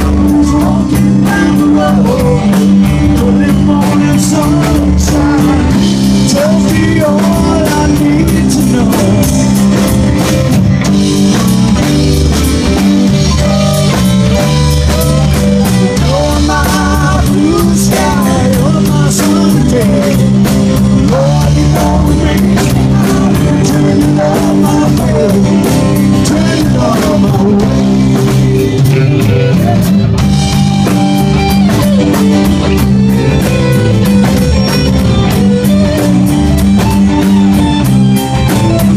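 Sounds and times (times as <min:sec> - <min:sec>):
person singing: 0:00.0 - 0:09.9, 0:13.0 - 0:30.3
rock band playing live: 0:00.0 - 0:38.9.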